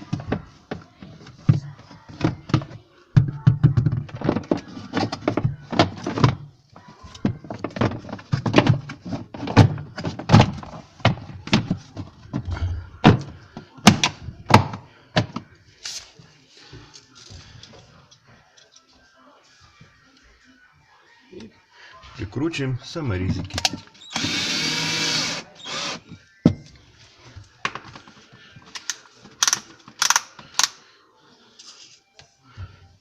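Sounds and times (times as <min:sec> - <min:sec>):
plastic cover clacking and knocking: 0:00.0 - 0:15.5.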